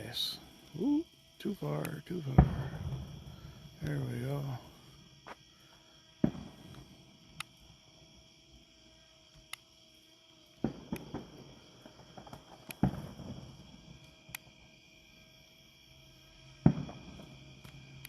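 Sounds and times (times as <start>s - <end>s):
faint high whine: 0.0s - 18.0s
distant fireworks booming: 2.1s - 4.9s, 6.2s - 7.1s, 10.6s - 14.6s, 16.6s - 17.6s.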